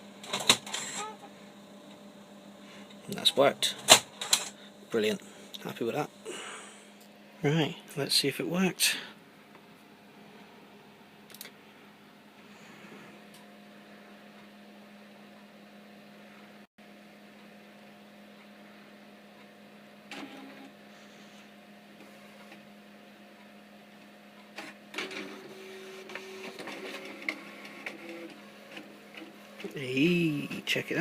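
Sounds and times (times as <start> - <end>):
printer hum: 0.0 - 8.1, 10.0 - 31.0
mechanism clicking: 11.3 - 11.5.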